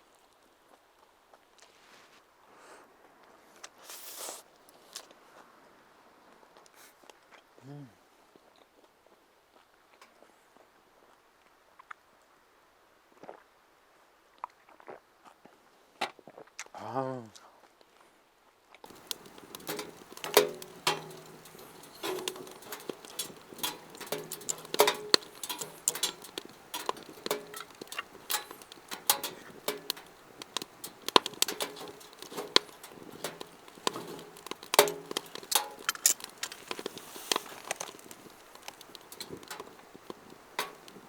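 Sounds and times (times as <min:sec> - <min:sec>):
wood fire crackling: 0:18.9 - 0:41.0.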